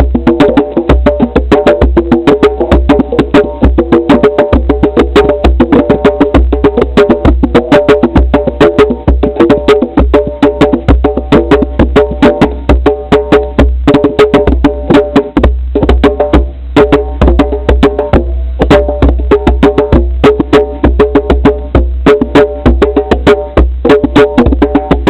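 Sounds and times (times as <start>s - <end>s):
fast tuned percussion music: 0.0s - 25.0s.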